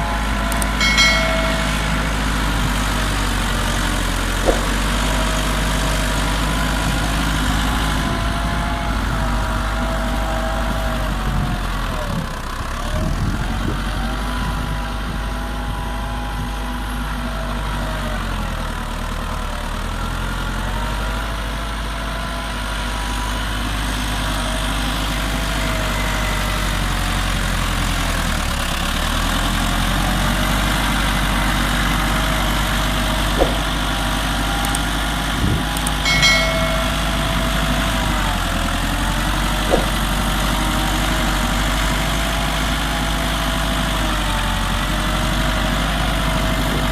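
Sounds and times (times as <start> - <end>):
tractor diesel engine under load: 0.0 - 46.9
sharp knocks: 0.8 - 2.2, 4.4 - 5.2, 33.4 - 34.0, 36.1 - 37.6, 39.7 - 40.3.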